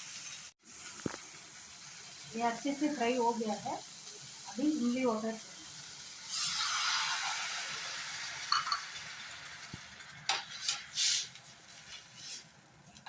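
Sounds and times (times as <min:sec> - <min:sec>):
liquid sizzling in hot pan: 0:00.0 - 0:13.0.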